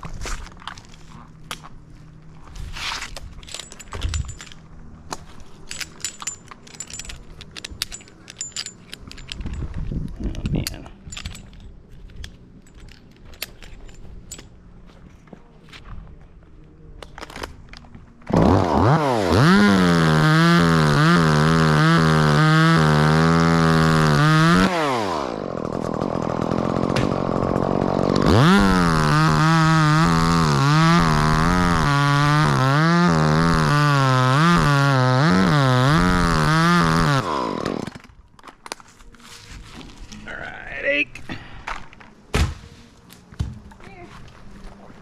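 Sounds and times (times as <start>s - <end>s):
chainsaw cutting limbs: 18.2s - 38.2s.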